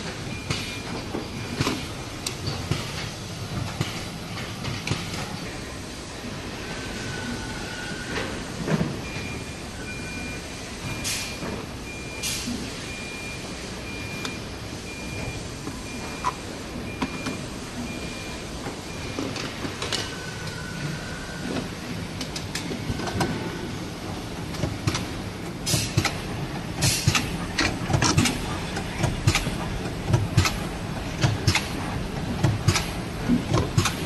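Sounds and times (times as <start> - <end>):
sharp machine clicks and clacks: 25.7 - 34.0.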